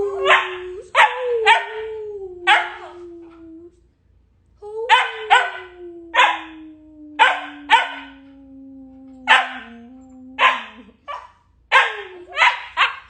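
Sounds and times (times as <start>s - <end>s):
puppy barking: 0.3s - 1.8s, 4.9s - 5.6s, 7.2s - 8.2s, 9.3s - 9.7s, 10.4s - 13.0s
low tone falling in pitch: 5.7s - 10.4s.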